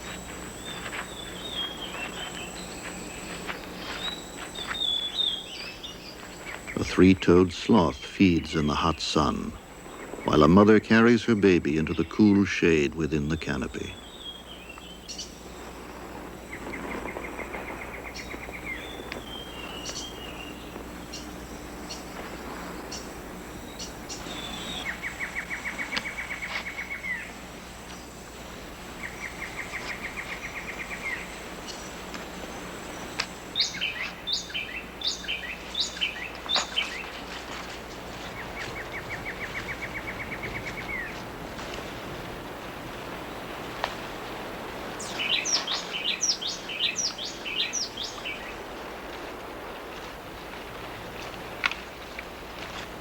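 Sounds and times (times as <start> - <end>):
rapid trilled bird call: 0.0 - 15.6, 22.8 - 28.2, 28.9 - 37.4, 44.9 - 48.6
steady hiss: 0.0 - 53.0.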